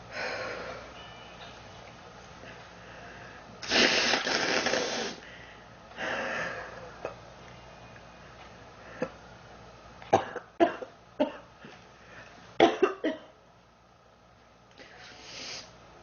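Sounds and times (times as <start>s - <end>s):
girl coughing: 10.2s - 11.4s, 12.6s - 13.3s.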